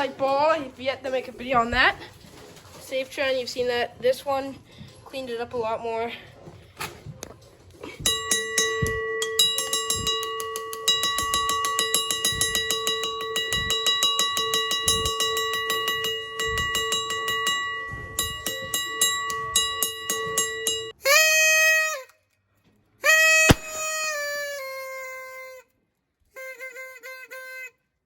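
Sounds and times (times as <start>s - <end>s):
bell ringing rapidly: 8.0s - 20.9s.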